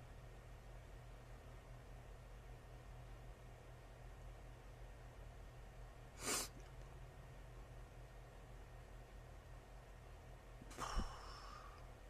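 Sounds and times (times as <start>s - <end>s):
faint low hum: 0.0s - 12.0s
light hiss: 6.2s - 6.7s.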